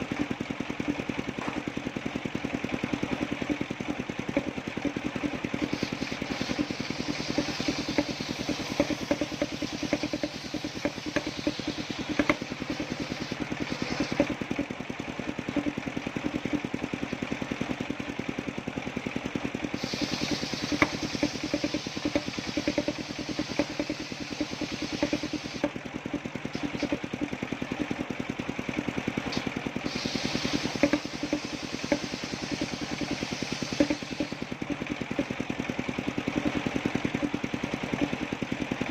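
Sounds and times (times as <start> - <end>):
sawmill engine pulsing: 0.0 - 38.9
saw blade hissing through wood: 5.5 - 14.4, 19.7 - 25.6, 29.3 - 34.6.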